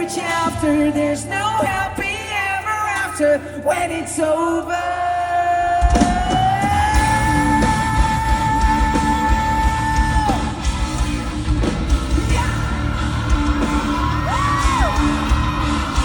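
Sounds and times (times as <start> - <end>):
live rock band playing: 5.6 - 16.0
crowd yells and whoops: 12.2 - 16.0.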